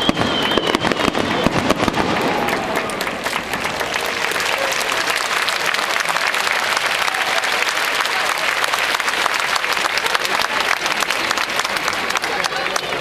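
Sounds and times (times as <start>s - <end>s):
fireworks bangs and crackling: 0.0s - 4.4s
crowd applauding: 0.0s - 13.0s.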